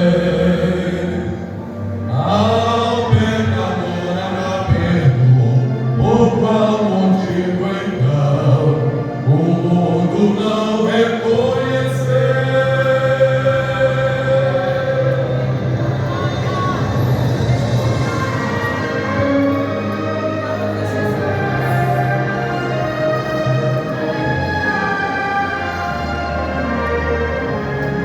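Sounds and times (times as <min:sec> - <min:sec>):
vocal group singing worship song: 0:02.1 - 0:19.6.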